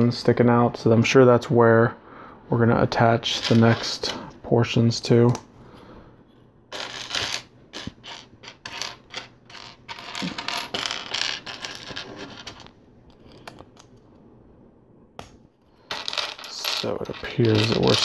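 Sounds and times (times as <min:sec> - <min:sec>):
plastic pieces clicking and clattering: 0:06.8 - 0:13.9, 0:15.9 - 0:18.0.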